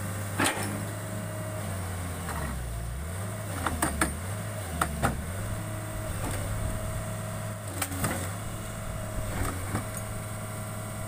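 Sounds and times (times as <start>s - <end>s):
heavy machine engine idling: 4.9s - 11.0s.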